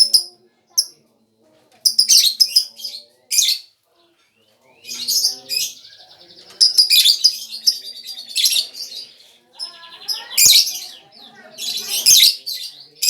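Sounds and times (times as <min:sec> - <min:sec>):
bird chirping and trilling: 0:00.0 - 0:01.0, 0:01.8 - 0:03.7, 0:04.8 - 0:13.0.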